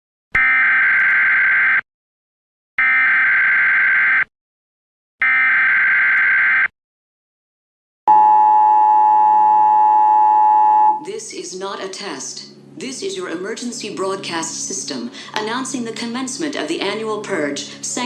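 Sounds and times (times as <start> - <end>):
two-tone attention signal: 8.1 - 11.0.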